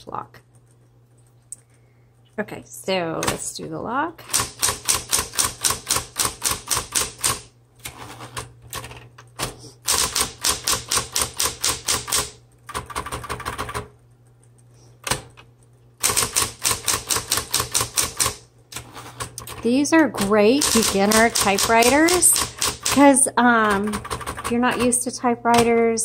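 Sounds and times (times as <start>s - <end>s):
typewriter motor humming: 4.2s - 13.9s, 16.0s - 25.8s
typewriter keystrokes: 4.3s - 7.5s, 8.4s - 13.9s, 16.0s - 18.4s, 20.6s - 23.0s.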